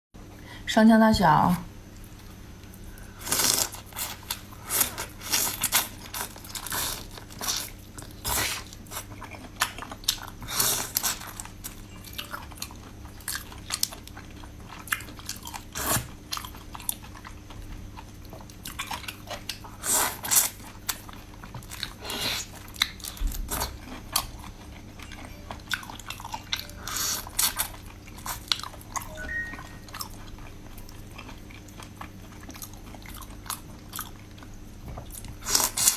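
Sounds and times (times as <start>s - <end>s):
crunchy chewing: 2.0s - 29.0s, 29.9s - 35.9s.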